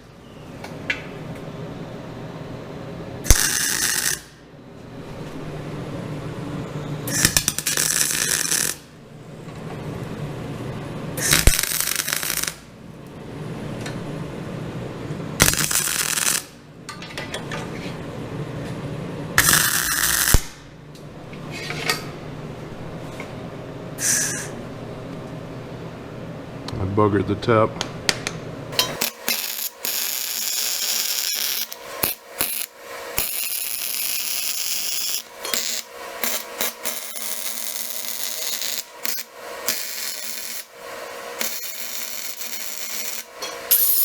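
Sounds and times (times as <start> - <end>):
steady low hum: 0.0 - 3.4, 20.4 - 43.8
welding arcs crackling and sizzling: 3.2 - 4.4, 7.1 - 8.9, 11.2 - 12.6, 15.4 - 16.6, 19.4 - 20.6, 28.8 - 44.0.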